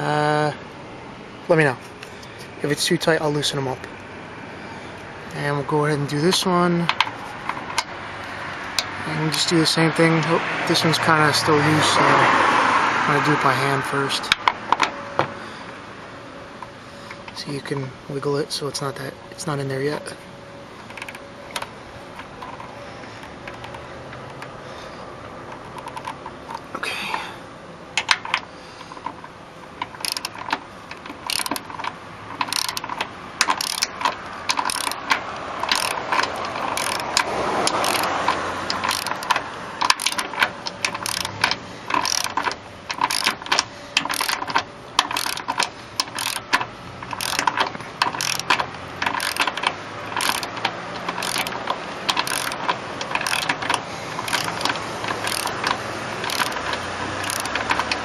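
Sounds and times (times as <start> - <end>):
torque wrench ratchet clicking: 20.9 - 21.7, 25.5 - 27.3, 29.8 - 58.0.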